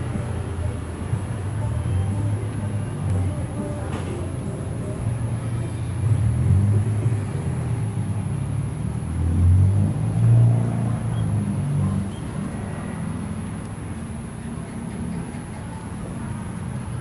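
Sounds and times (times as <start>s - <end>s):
train engine rumble: 10.0s - 17.0s.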